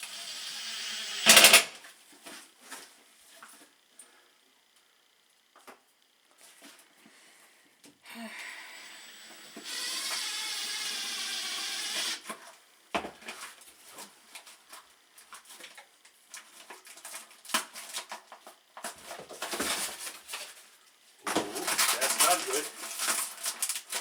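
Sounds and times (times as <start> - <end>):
power drill running: 0.0 - 1.8, 8.4 - 12.3.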